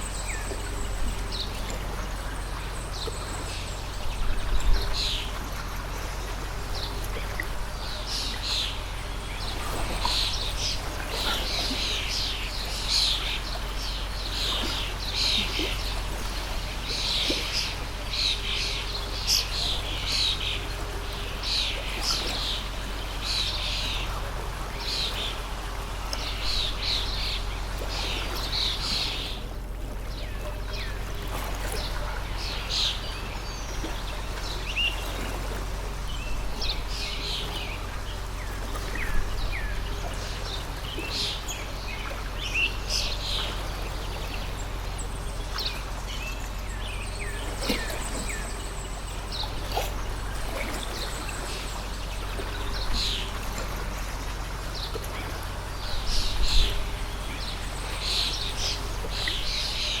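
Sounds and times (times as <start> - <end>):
birds chirping: 0.0 - 60.0
water stream flowing: 0.0 - 60.0.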